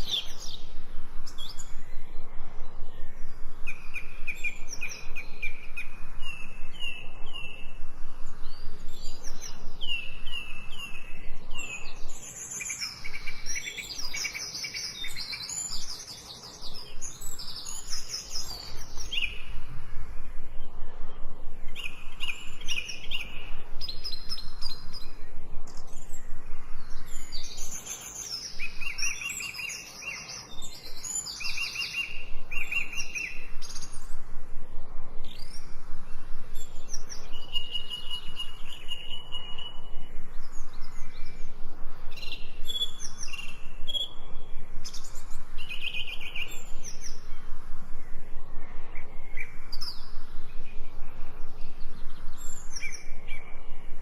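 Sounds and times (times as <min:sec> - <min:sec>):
birds chirping and singing: 0:00.0 - 0:19.8, 0:21.7 - 0:34.2, 0:36.6 - 0:48.2.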